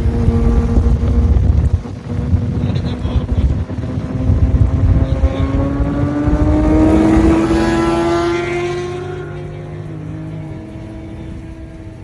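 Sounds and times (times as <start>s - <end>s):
car engine accelerating: 0.0s - 12.0s
wind buffeting microphone: 0.0s - 12.0s.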